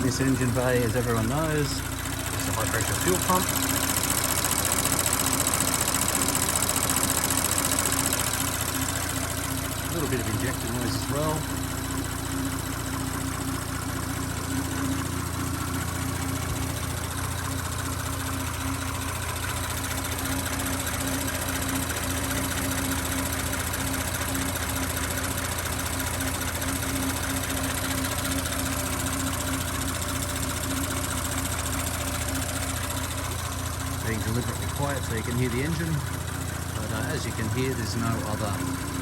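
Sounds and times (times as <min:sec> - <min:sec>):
injector ticking: 0:00.0 - 0:11.8
car engine idling: 0:00.0 - 0:39.0
fuel pump noise: 0:00.0 - 0:39.0.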